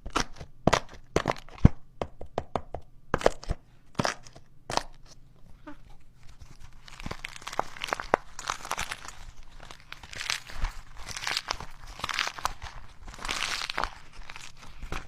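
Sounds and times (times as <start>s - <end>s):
crinkling and rustling: 5.0s - 15.0s.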